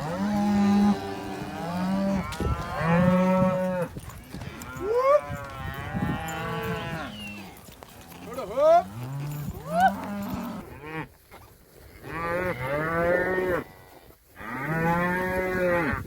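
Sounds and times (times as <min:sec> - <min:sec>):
cattle mooing: 0:00.0 - 0:11.1.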